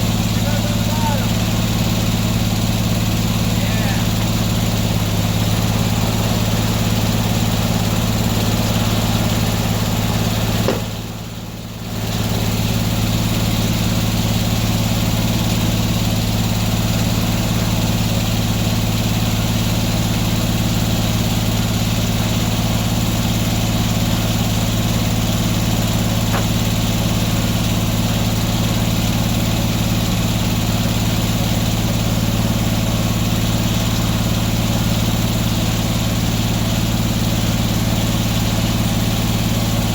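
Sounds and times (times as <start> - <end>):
engine droning steadily: 0.0 - 39.9.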